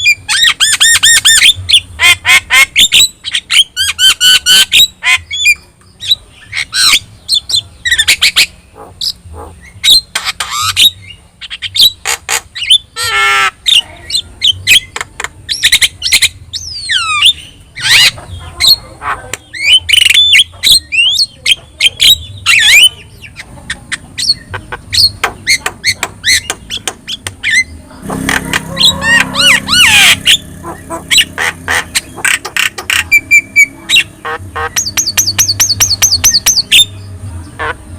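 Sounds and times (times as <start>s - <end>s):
harsh buzzy bird call: 24.3s - 36.9s.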